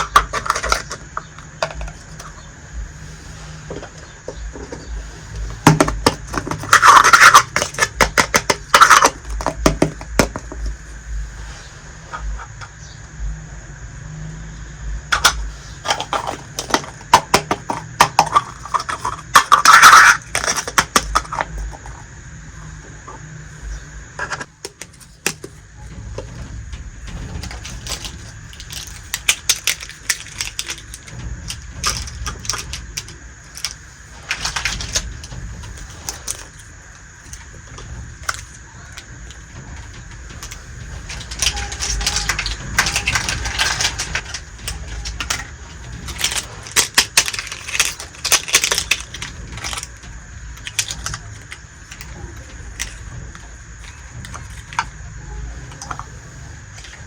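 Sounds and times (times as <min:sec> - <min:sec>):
toy pieces clicking and scraping: 0:00.0 - 0:02.4, 0:04.6 - 0:10.8, 0:15.1 - 0:22.0, 0:27.1 - 0:39.5, 0:40.2 - 0:54.9, 0:55.7 - 0:56.2.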